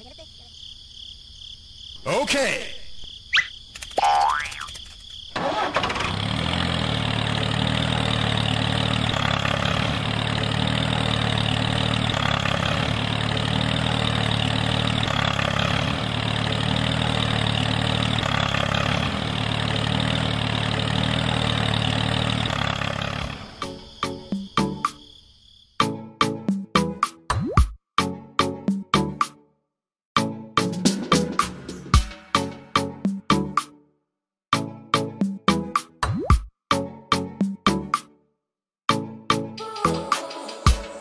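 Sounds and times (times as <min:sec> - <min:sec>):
engine running steadily: 0:05.4 - 0:24.4.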